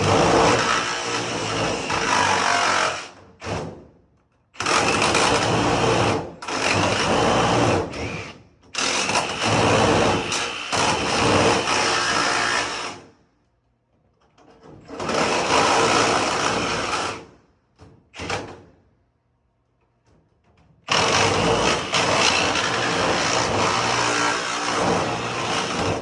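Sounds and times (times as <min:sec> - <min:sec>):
jigsaw cutting sheet metal: 0:00.0 - 0:03.8, 0:04.6 - 0:13.1, 0:14.8 - 0:17.4, 0:20.8 - 0:26.0.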